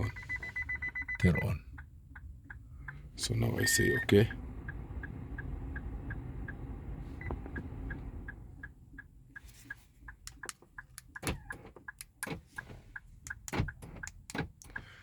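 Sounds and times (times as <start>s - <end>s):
car warning chime beeping rapidly: 0.0s - 10.2s.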